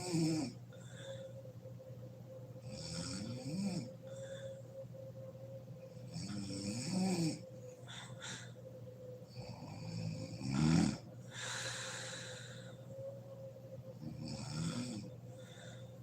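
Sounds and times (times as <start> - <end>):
woman snoring: 0.0 - 0.6, 2.6 - 4.2, 6.1 - 7.4, 9.3 - 12.7, 14.0 - 15.8
faint steady hum: 0.0 - 16.0
breathy rush of air: 11.2 - 13.3.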